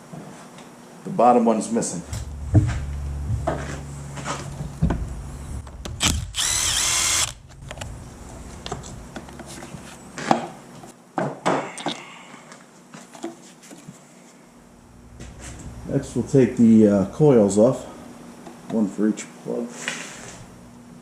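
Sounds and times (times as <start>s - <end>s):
power drill whining: 5.6s - 9.2s.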